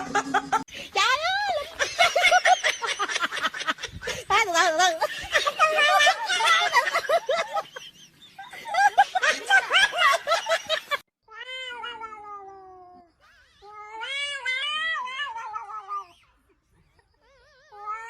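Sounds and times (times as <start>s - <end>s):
cat meowing: 11.3s - 16.1s.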